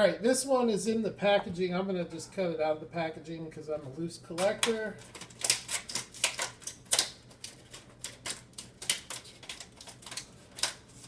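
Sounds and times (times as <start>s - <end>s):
plastic packaging cut open crackling: 4.4s - 11.0s.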